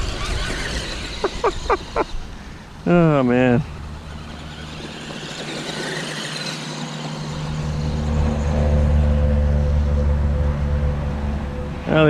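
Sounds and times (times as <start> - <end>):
rc truck motor and gear whine: 0.0 - 12.0
steady low hum: 7.1 - 12.0.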